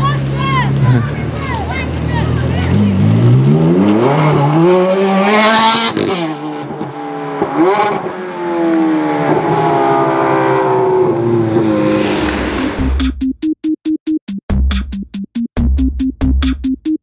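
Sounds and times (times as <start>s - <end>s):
car engine accelerating hard: 0.2s - 13.0s.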